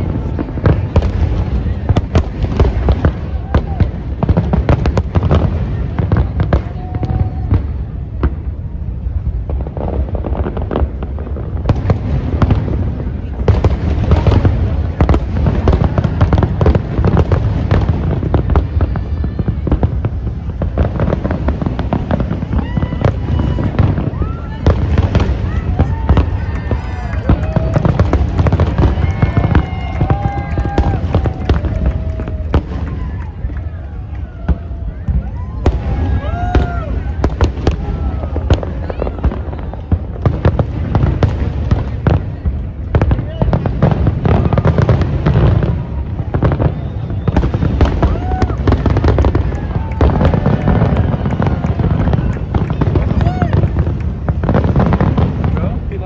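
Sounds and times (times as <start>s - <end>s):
fireworks booming and cracking: 0.0s - 56.0s
low rumble of explosions: 0.0s - 56.0s.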